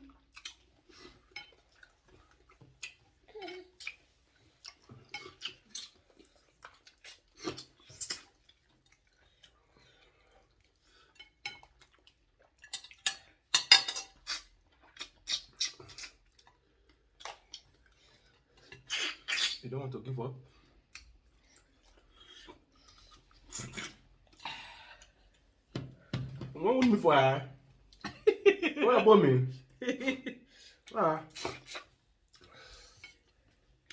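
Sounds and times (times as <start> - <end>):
chewing: 0.0 - 13.4, 14.1 - 19.6, 20.5 - 25.6
cutlery clicking against bowls: 12.7 - 14.3.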